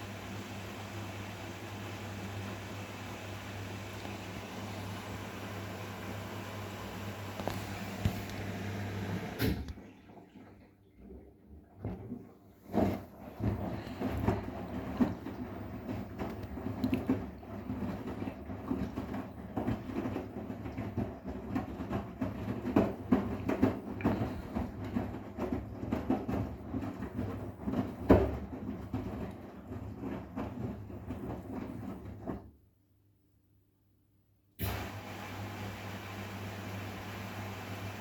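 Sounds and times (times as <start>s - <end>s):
washing machine motor hum: 0.0s - 32.6s, 34.6s - 38.0s
washing machine drum tumbling: 11.8s - 32.6s.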